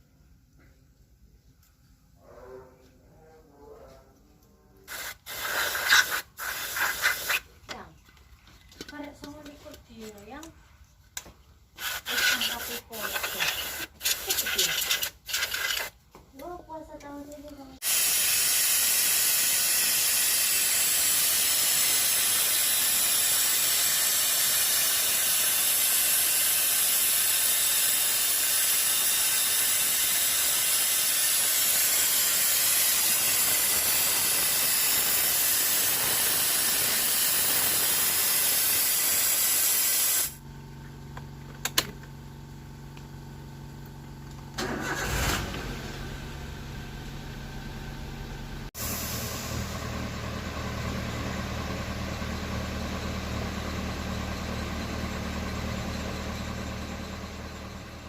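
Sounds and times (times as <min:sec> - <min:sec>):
aerosol spray hissing: 0:04.9 - 0:07.5, 0:11.8 - 0:15.9, 0:17.8 - 0:40.4
car engine idling: 0:40.4 - 0:58.0.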